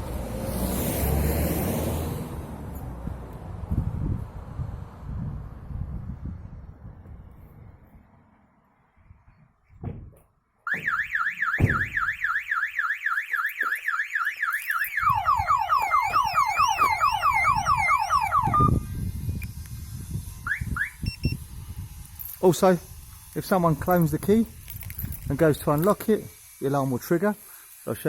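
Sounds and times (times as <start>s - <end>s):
van alarm siren: 10.7s - 18.9s, 20.4s - 21.4s
short beep: 21.0s - 21.4s.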